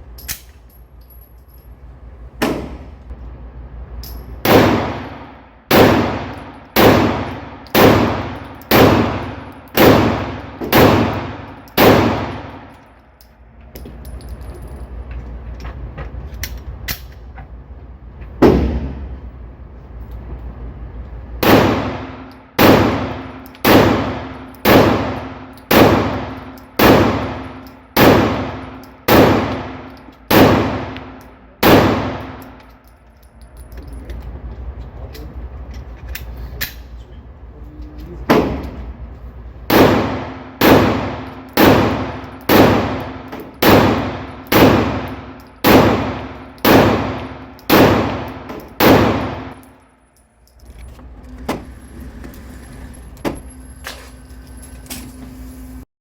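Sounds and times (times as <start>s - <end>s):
pistol shots ringing: 4.4s - 12.8s, 21.4s - 32.6s, 39.7s - 49.8s.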